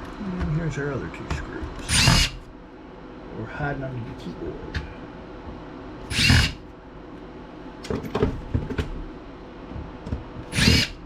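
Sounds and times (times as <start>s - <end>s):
power screwdriver whine: 1.9s - 2.4s, 6.1s - 6.6s, 10.5s - 11.0s
clicks and knocks of laptop parts: 7.8s - 9.0s.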